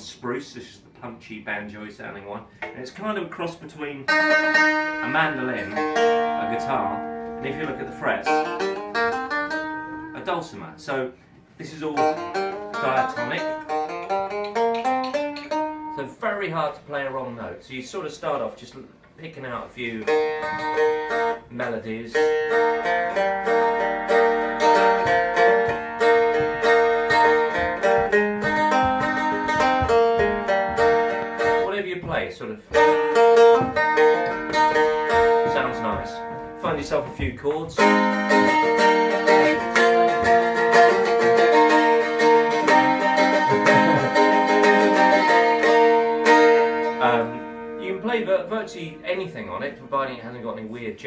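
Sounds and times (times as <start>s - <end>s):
fretted string instrument strummed: 2.6s - 16.3s, 19.8s - 50.4s
stick dulcimer melody: 4.1s - 10.4s, 12.0s - 16.0s, 19.9s - 49.2s.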